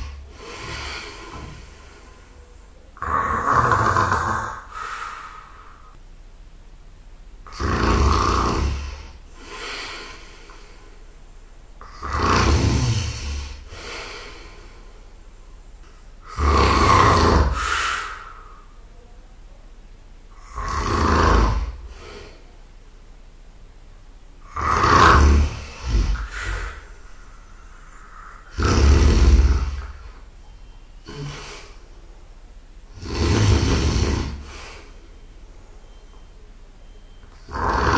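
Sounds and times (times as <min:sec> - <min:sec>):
person snoring loudly: 0:00.0 - 0:02.0, 0:03.0 - 0:05.9, 0:07.5 - 0:10.5, 0:11.8 - 0:14.5, 0:16.2 - 0:18.7, 0:20.3 - 0:22.4, 0:24.4 - 0:26.9, 0:27.8 - 0:30.2, 0:31.0 - 0:31.8, 0:32.9 - 0:34.9, 0:37.4 - 0:37.9
soft breath out: 0:04.7 - 0:06.0.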